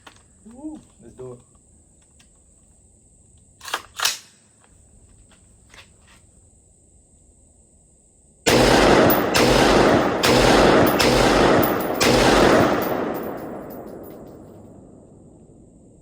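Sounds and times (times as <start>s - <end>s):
rifle shots with echo: 8.5s - 16.0s.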